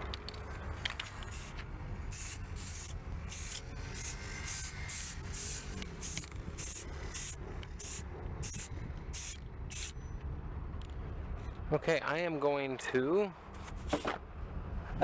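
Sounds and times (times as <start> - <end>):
aerosol spray can hissing: 1.3 - 9.9.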